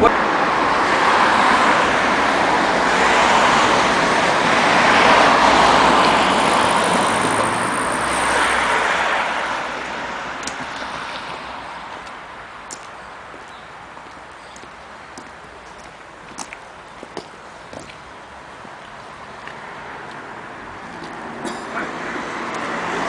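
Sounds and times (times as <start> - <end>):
vehicle passing with rushing hiss: 0.2 - 12.6, 18.5 - 23.0.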